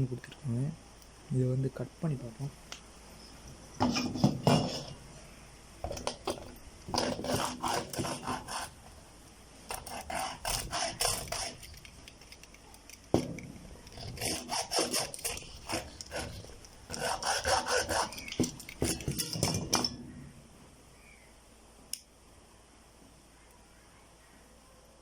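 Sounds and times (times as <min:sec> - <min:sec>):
rasping hand cutting strokes: 0:06.9 - 0:08.8, 0:09.7 - 0:11.9, 0:13.8 - 0:19.8.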